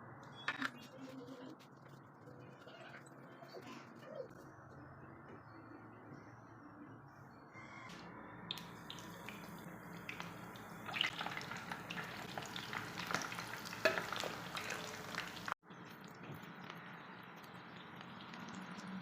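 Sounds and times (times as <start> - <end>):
food sizzling in hot oil: 8.6 - 15.6.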